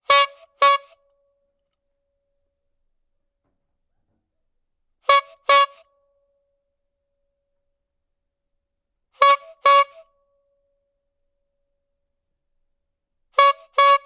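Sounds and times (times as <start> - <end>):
squeeze-bulb horn honking: 0.1 - 1.0, 13.4 - 14.0.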